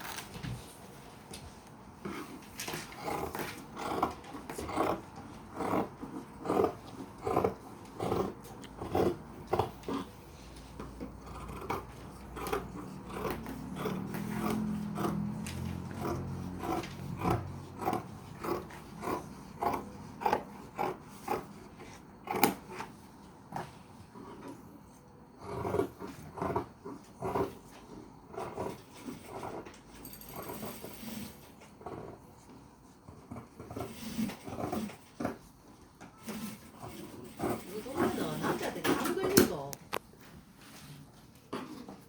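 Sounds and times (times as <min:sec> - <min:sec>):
shears snipping cloth: 0:10.9 - 0:22.9.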